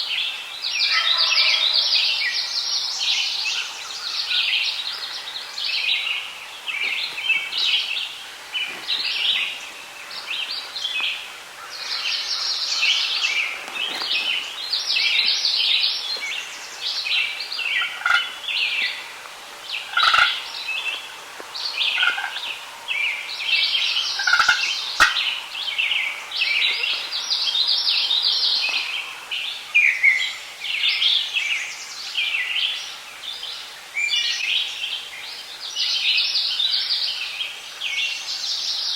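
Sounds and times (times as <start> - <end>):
songbirds chirping and trilling: 0.0 - 38.9
low-pitched bird calls: 11.6 - 29.3.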